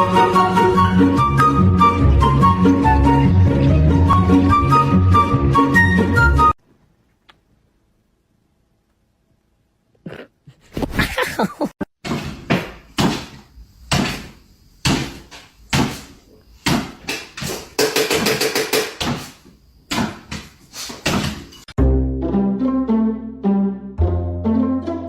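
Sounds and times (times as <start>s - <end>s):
knocks and bangs: 12.0s - 19.3s.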